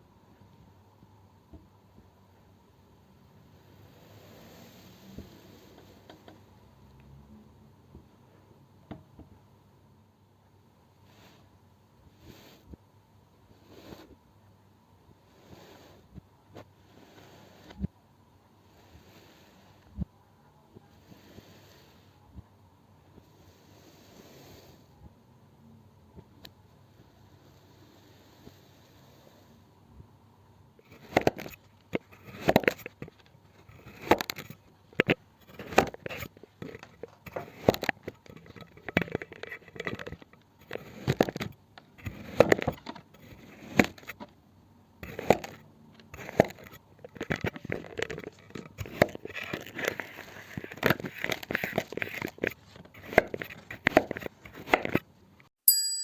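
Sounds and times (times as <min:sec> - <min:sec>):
bright ding: 0:55.6 - 0:56.0.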